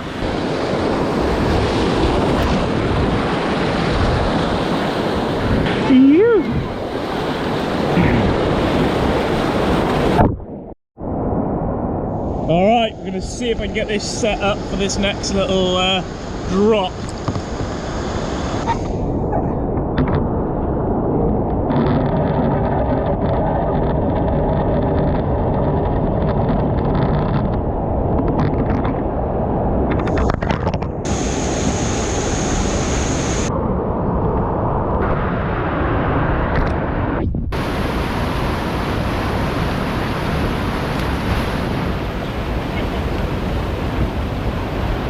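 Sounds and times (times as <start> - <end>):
rushing white water splashing: 12.4 - 18.8, 31.1 - 33.5, 37.6 - 45.0.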